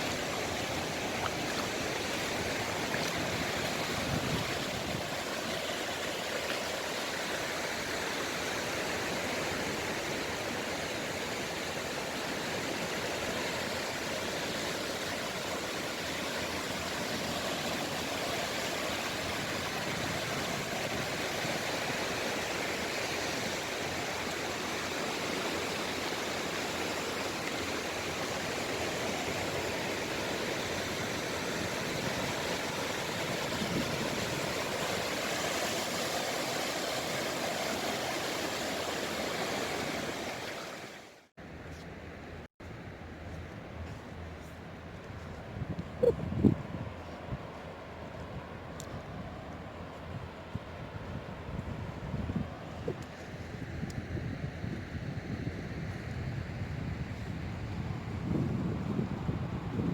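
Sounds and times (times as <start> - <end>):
sea waves washing on shore: 0.0 - 41.3.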